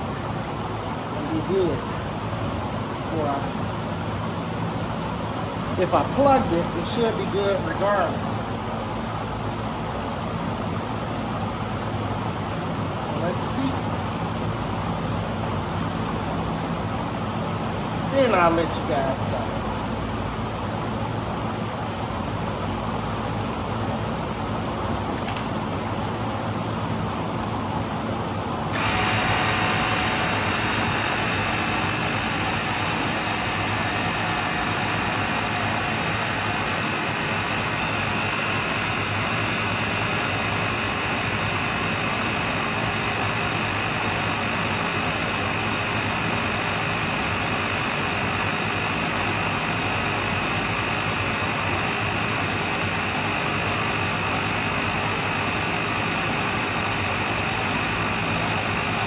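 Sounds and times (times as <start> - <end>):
air pump running: 0.0 - 8.8, 28.0 - 59.0.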